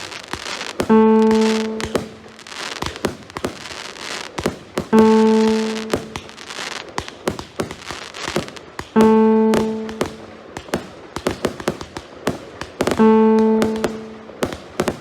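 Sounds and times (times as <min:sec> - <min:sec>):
firework bangs and crackles: 0:00.0 - 0:15.0
loud steady pitched note: 0:00.9 - 0:02.4, 0:04.9 - 0:06.4, 0:09.0 - 0:10.3, 0:13.0 - 0:14.4.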